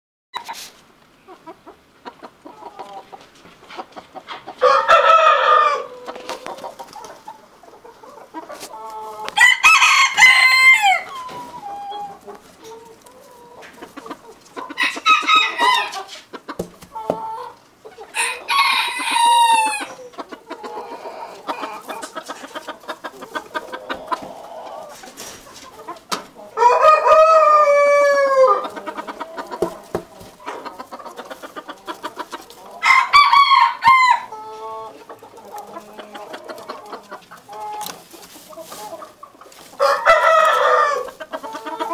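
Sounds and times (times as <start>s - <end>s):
chickens clucking: 0.4s - 41.9s
roosters crowing: 4.5s - 6.5s, 8.7s - 13.7s, 14.6s - 16.2s, 16.9s - 22.5s, 26.4s - 35.0s, 39.6s - 41.9s.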